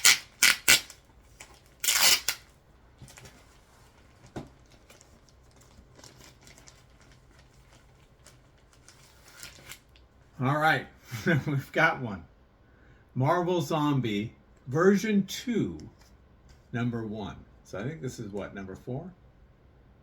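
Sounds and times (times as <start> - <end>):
packing tape tearing: 0.0 - 2.5
package rustling: 0.0 - 10.0.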